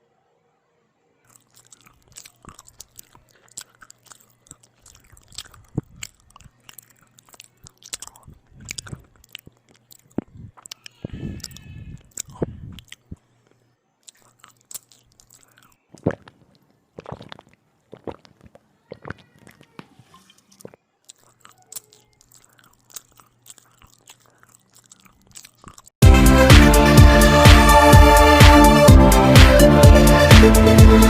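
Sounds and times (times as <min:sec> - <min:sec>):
person chewing bread: 0:01.2 - 0:26.0
loud electronic music: 0:26.0 - 0:31.0.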